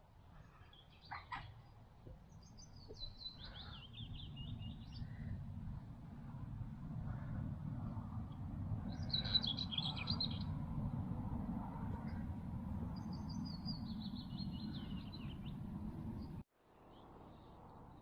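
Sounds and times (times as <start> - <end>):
songbirds singing: 0.3 - 5.5, 8.3 - 11.0, 11.8 - 17.5
steady low rumble: 3.8 - 16.5.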